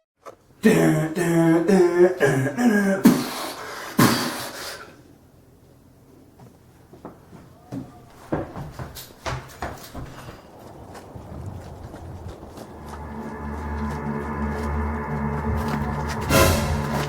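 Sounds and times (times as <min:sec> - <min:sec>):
person making wavering wordless sounds: 0:00.6 - 0:03.6.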